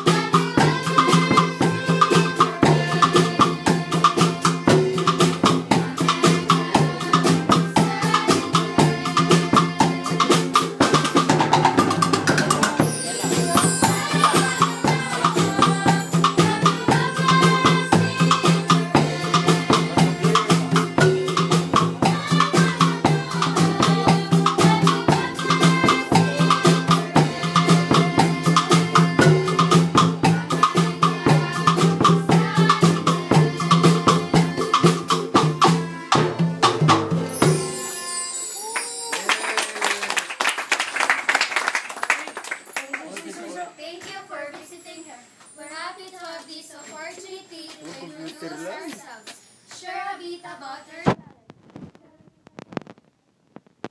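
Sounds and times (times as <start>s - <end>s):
upbeat music with percussion beat: 0.0s - 39.8s
rattling tambourine: 11.9s - 34.8s, 37.2s - 39.7s.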